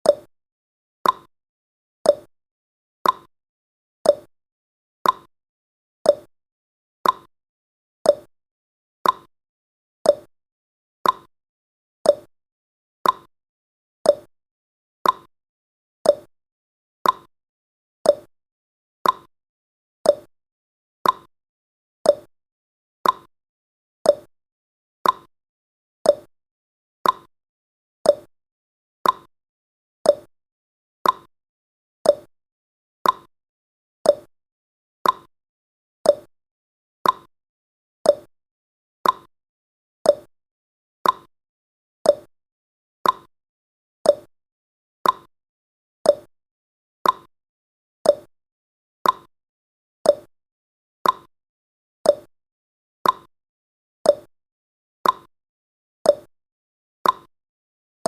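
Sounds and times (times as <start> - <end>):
clock ticking: 35.0 - 35.3, 39.0 - 39.3, 43.0 - 43.3, 51.0 - 51.3.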